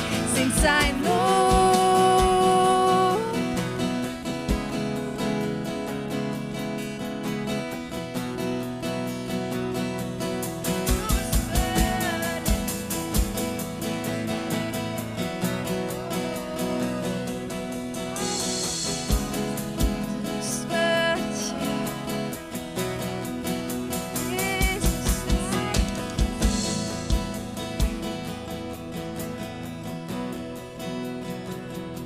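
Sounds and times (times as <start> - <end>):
band playing worship song: 0.0 - 32.0.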